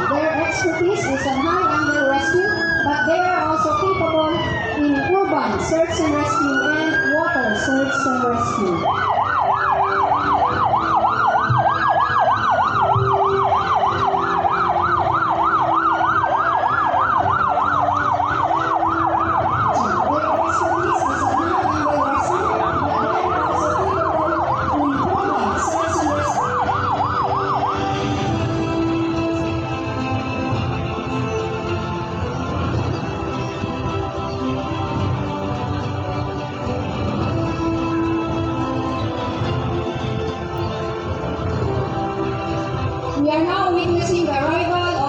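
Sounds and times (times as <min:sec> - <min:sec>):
siren fast yelp: 0:00.0 - 0:29.9
siren rising and falling wail: 0:00.0 - 0:45.0.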